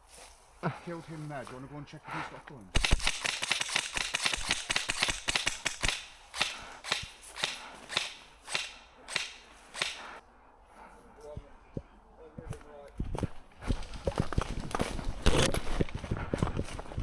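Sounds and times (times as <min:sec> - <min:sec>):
footsteps crunching through leaves: 0:00.0 - 0:01.7.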